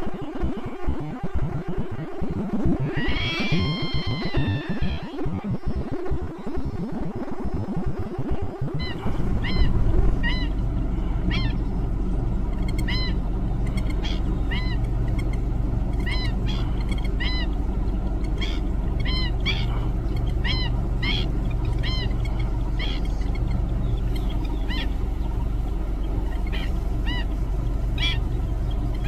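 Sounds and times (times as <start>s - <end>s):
steady low hum: 0.0s - 29.0s
birds yelping calls: 2.8s - 5.7s, 8.8s - 29.0s.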